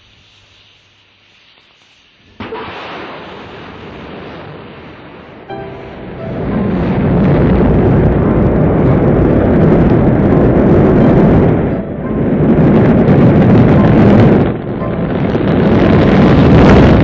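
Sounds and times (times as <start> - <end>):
rocket engines rumbling: 4.8 - 17.0.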